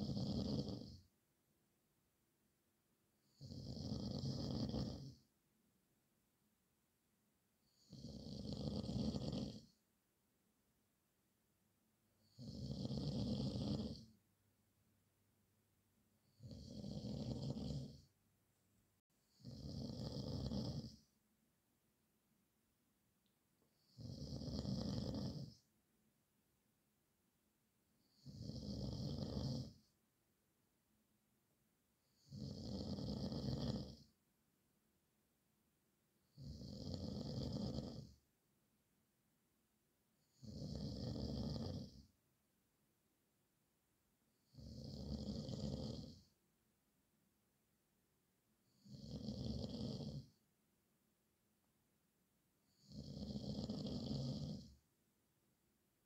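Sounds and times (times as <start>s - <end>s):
man snoring: 0.0s - 1.0s, 3.3s - 5.2s, 7.7s - 9.7s, 12.2s - 14.1s, 16.3s - 18.0s, 19.3s - 21.0s, 23.8s - 25.6s, 28.1s - 29.8s, 32.2s - 34.0s, 36.3s - 38.2s, 40.3s - 42.0s, 44.5s - 46.2s, 48.7s - 50.3s, 52.7s - 54.7s
quiet breaths: 0.0s - 1.2s, 3.0s - 5.5s, 7.4s - 10.0s, 11.8s - 14.3s, 15.4s - 21.3s, 23.2s - 25.9s, 27.8s - 30.1s, 31.9s - 34.3s, 36.1s - 38.3s, 40.0s - 42.2s, 44.2s - 46.5s, 48.4s - 50.6s, 52.4s - 55.0s.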